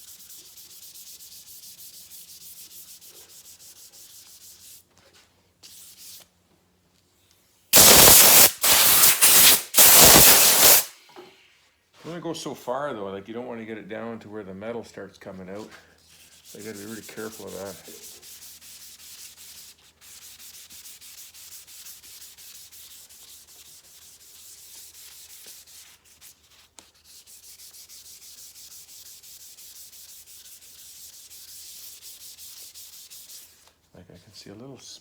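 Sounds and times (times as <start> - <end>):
sandpaper rubbed by hand: 0.0 - 6.3, 7.8 - 10.9, 16.1 - 33.8.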